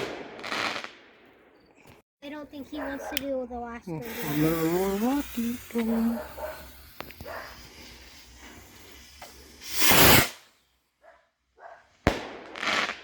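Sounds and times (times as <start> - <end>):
skyrocket launching whoosh: 4.0 - 10.4
firework bang: 5.7 - 10.4, 12.1 - 13.0.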